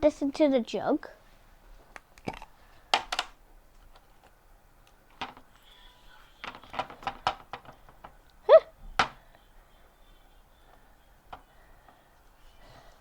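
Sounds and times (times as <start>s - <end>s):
plastic items clicking and tapping: 2.2s - 5.6s, 6.4s - 8.2s.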